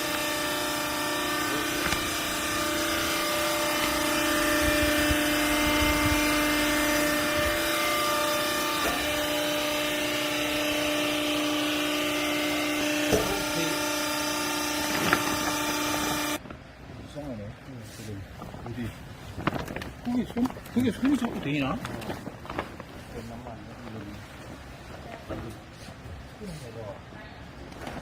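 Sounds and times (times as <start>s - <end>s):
baler machine hum and whine: 0.0s - 17.6s.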